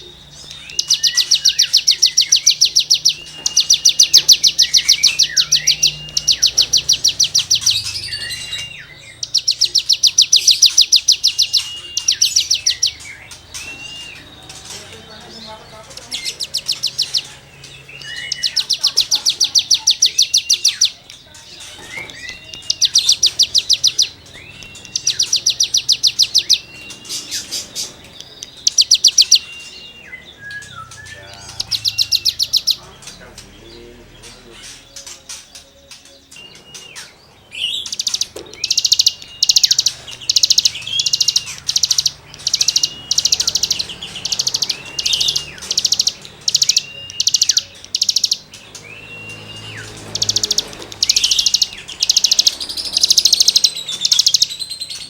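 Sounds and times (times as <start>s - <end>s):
songbird rasping trills: 0.0s - 55.0s
bird rising and falling whistles: 0.4s - 14.3s, 37.6s - 55.0s.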